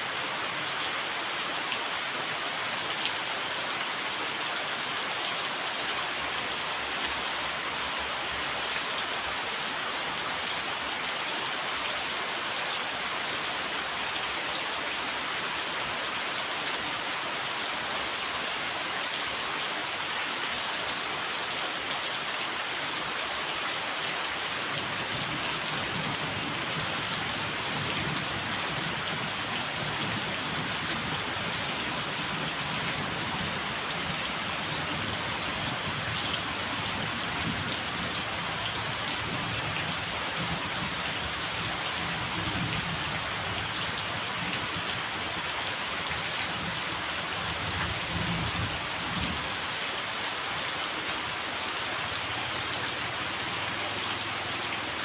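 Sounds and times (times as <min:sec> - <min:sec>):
rain pattering: 0:24.2 - 0:55.0.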